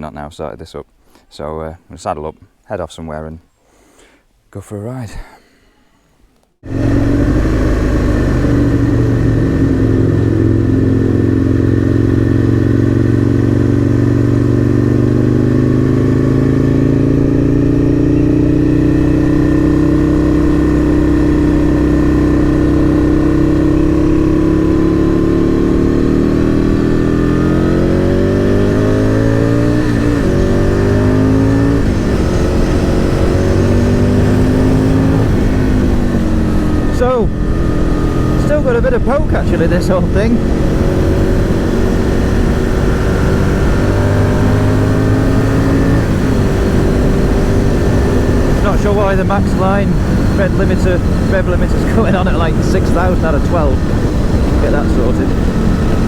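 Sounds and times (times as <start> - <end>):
motorcycle engine revving: 6.6 - 56.0.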